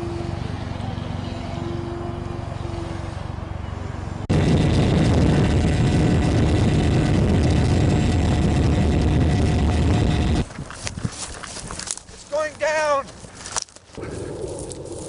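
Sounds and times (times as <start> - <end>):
loud close engine: 0.0 - 10.5
model airplane engine drone: 0.0 - 10.5.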